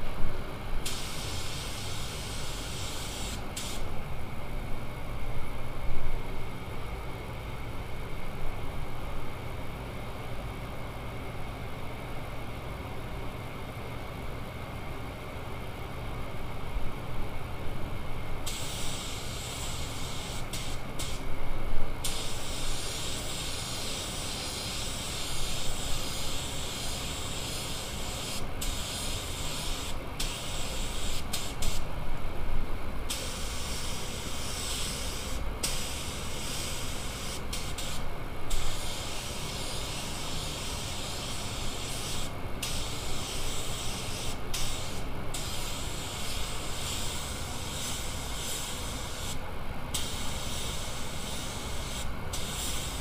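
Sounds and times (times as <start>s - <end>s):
air spray gun hissing: 0.8s - 3.9s, 18.5s - 21.3s, 22.0s - 31.9s, 33.1s - 53.0s.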